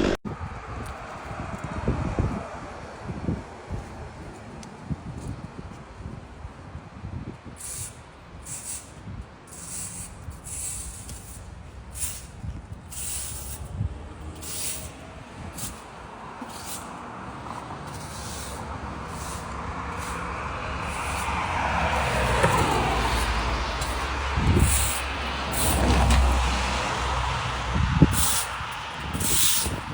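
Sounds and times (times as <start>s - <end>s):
vehicle road noise passing: 0.0s - 7.3s, 7.9s - 29.9s
low engine rumble: 10.0s - 29.9s.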